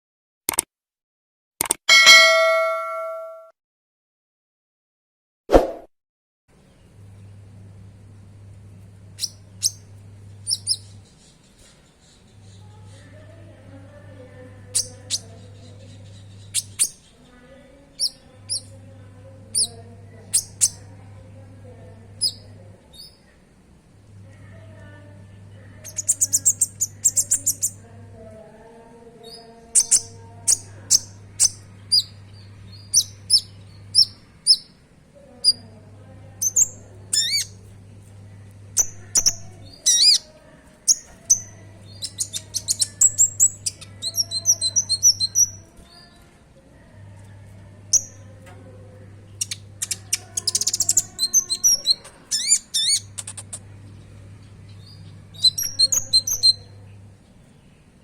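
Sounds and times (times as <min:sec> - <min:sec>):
bird chirping and trilling: 0:01.9 - 0:03.4, 0:09.2 - 0:12.6, 0:14.7 - 0:18.8, 0:19.5 - 0:20.9, 0:25.8 - 0:27.8, 0:29.3 - 0:34.8, 0:36.4 - 0:37.6, 0:38.8 - 0:45.7, 0:49.4 - 0:53.6, 0:54.6 - 0:56.8
low steady hum: 0:06.6 - 0:11.4, 0:12.2 - 0:58.0.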